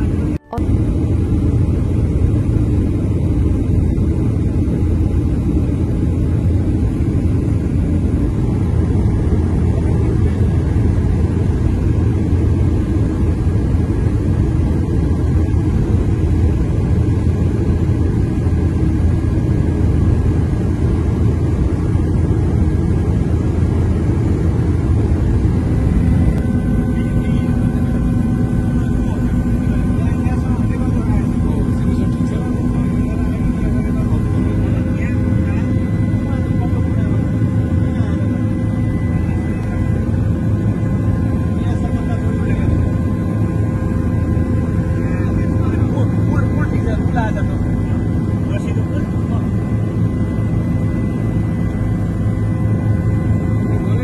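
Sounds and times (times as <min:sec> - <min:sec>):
multi-tone engine hum: 0:00.0 - 0:54.0
vehicle rumble and road noise: 0:22.6 - 0:35.6.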